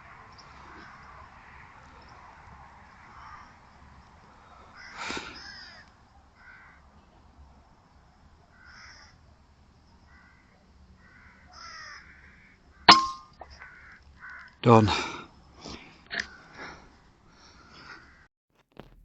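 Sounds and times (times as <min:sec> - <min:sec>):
crows cawing: 0:00.0 - 0:07.0, 0:08.5 - 0:09.3, 0:10.0 - 0:15.2, 0:16.2 - 0:18.3.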